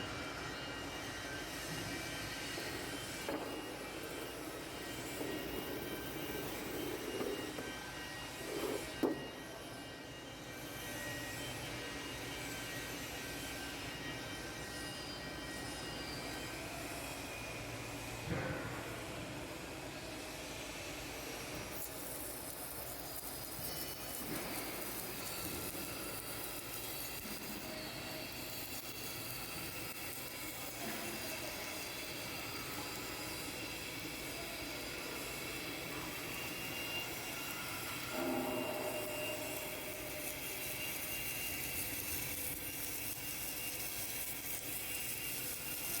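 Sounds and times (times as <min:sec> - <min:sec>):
welding machine hiss and hum: 0:00.0 - 0:46.0
faint whining tones: 0:22.0 - 0:45.9.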